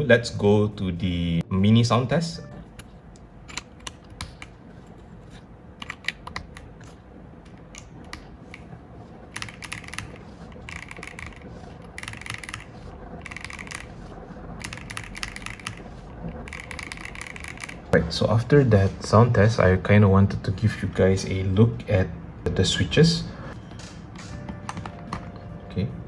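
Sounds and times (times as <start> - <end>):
mechanical keyboard typing: 3.5 - 18.0.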